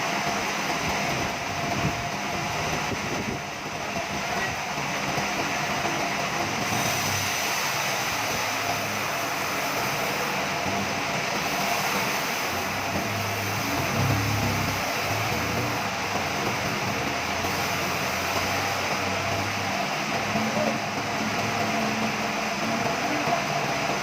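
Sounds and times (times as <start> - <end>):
machinery running: 0.0 - 24.0.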